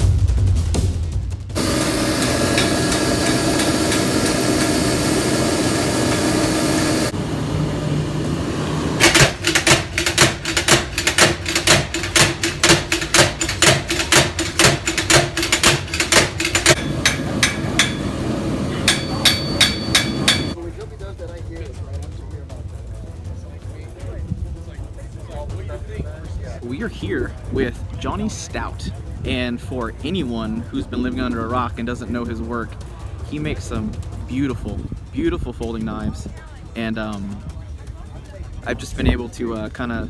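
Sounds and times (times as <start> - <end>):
hammer ringing on anvil: 1.6 - 7.1, 9.0 - 20.6
steady noise: 1.6 - 20.6.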